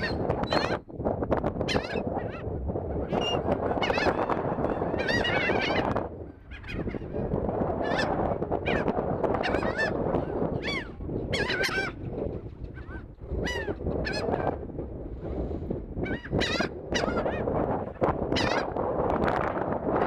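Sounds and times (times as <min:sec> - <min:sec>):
seagulls squawking: 0:00.0 - 0:00.8, 0:03.1 - 0:07.2, 0:07.8 - 0:12.0, 0:12.7 - 0:14.4, 0:16.1 - 0:17.5, 0:18.3 - 0:18.7
steady low rumble: 0:05.6 - 0:20.0.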